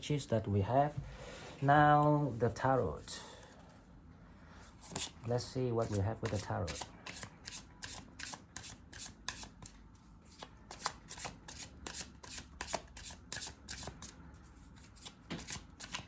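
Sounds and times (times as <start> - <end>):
cards being shuffled: 4.8 - 5.2, 5.8 - 14.1, 14.8 - 16.0.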